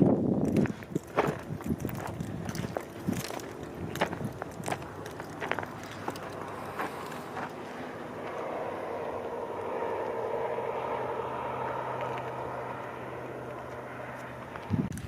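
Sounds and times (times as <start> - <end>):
vehicle driving past: 2.5 - 15.0.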